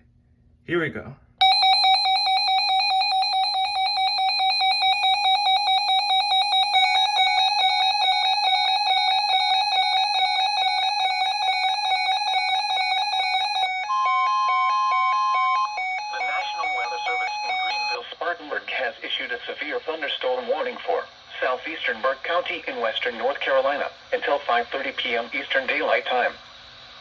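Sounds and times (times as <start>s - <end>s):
warbling electronic alarm beep: 1.4s - 18.0s.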